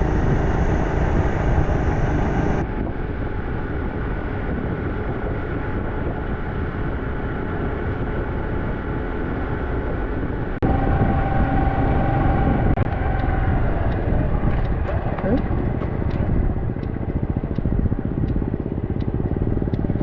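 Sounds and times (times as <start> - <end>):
steady whining tone: 0.0 - 2.8, 10.1 - 20.0
motorcycle engine running: 0.0 - 20.0
wind noise: 0.0 - 20.0.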